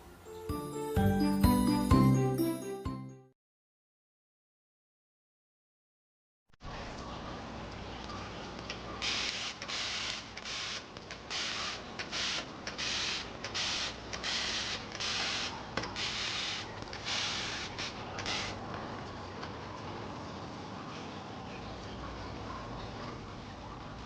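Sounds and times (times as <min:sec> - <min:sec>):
spray bottle squirts: 0:09.0 - 0:18.6.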